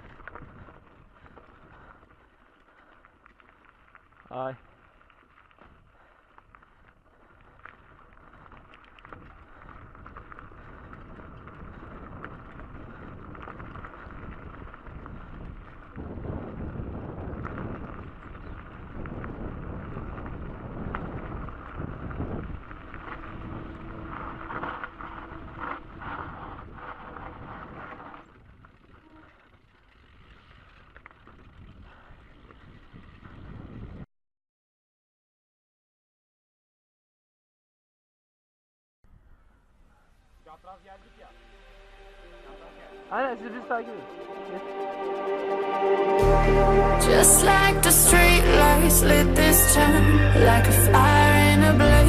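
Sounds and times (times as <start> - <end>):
wind buffeting microphone: 0.0 - 2.2, 6.7 - 34.1
bicycle rumble and rattling clicks: 0.0 - 34.1.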